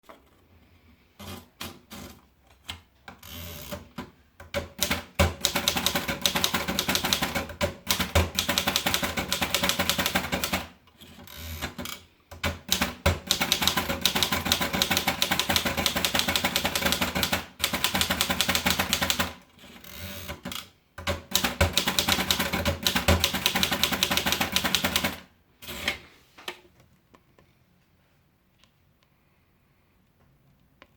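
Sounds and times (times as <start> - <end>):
manual typewriter typing: 3.1 - 26.0.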